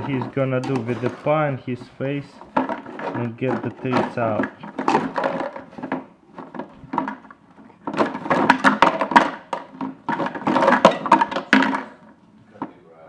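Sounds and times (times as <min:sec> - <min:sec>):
plastic bottles clattering on wood: 0:00.0 - 0:12.7.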